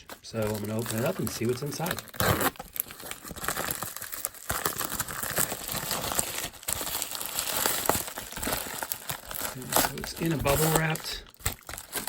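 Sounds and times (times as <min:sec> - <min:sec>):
plastic packaging crinkling and tearing: 0:00.0 - 0:12.0.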